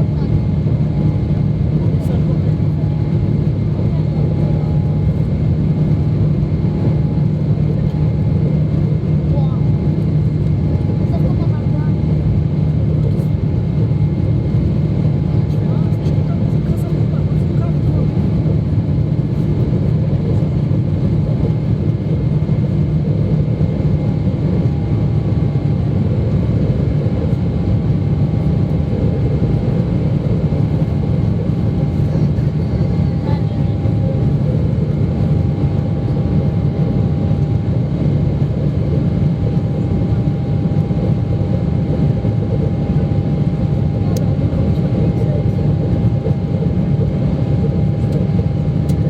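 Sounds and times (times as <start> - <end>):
airplane cabin engine rumble: 0.0 - 49.0.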